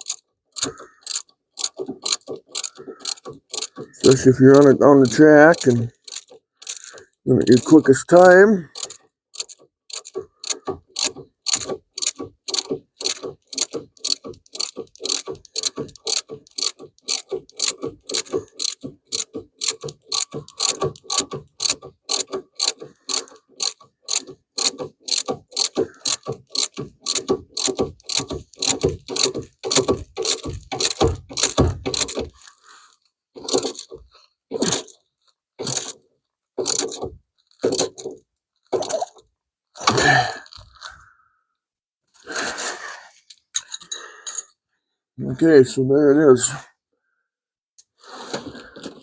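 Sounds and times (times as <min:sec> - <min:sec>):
ratchet wrench clicking: 0:00.0 - 0:32.4, 0:33.4 - 0:35.0, 0:35.6 - 0:36.0, 0:36.6 - 0:38.1.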